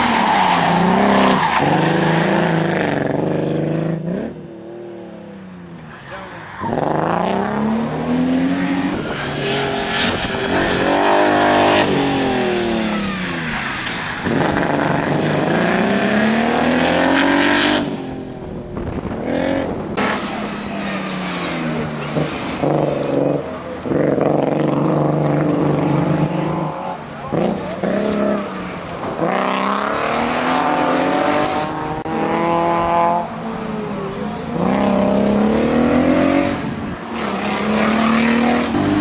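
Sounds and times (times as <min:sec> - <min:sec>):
car engine revving hard: 0:29.1 - 0:33.3.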